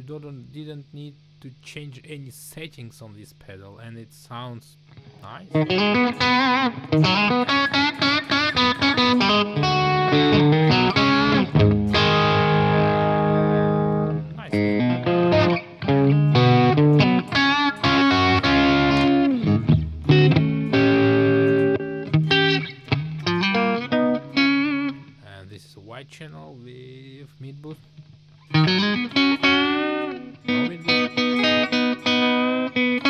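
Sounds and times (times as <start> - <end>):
overdriven electric guitar: 4.9 - 25.2, 28.0 - 33.0.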